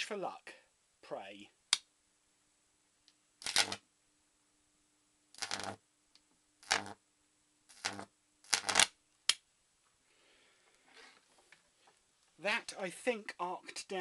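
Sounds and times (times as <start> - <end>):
high-voltage arc buzzing: 3.4 - 3.8, 5.3 - 5.8, 6.6 - 7.0, 7.7 - 9.0.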